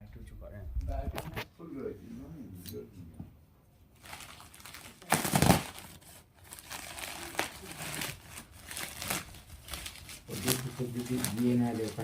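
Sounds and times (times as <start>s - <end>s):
packaging crinkling and rustling: 4.0s - 12.0s.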